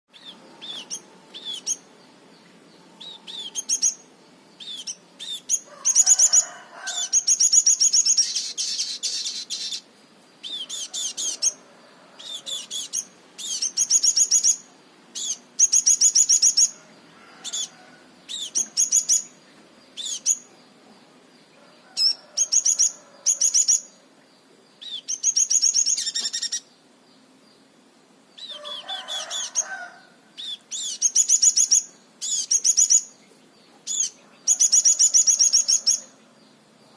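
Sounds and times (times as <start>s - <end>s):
bird singing high-pitched trills: 0.1s - 1.9s, 2.9s - 11.6s, 12.2s - 16.8s, 18.3s - 19.4s, 24.8s - 26.7s, 30.4s - 33.2s, 33.9s - 36.1s.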